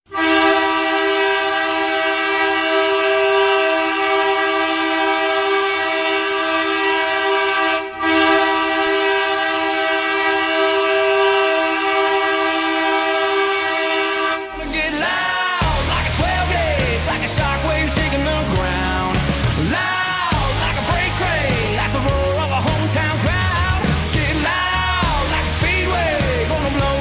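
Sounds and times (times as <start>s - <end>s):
goal horn blasting a chord: 0.1s - 14.7s.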